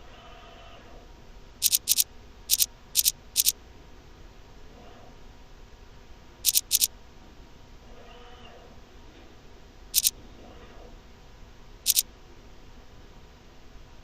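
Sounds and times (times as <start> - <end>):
faint motor whine: 0.0 - 14.0
sharp doubled machine clicks: 1.6 - 3.5, 6.5 - 6.9.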